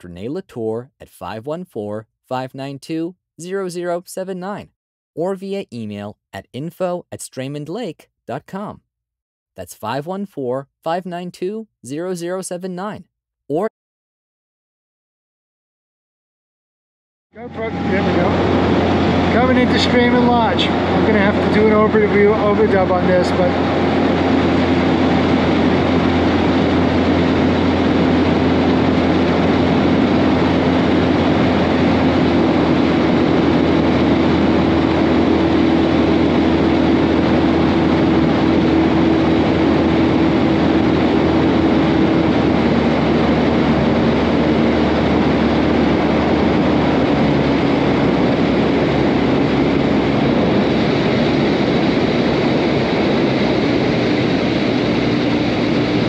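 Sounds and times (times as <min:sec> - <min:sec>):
outboard motor running: 0:17.4 - 0:56.0
water rushing over hull: 0:17.4 - 0:56.0.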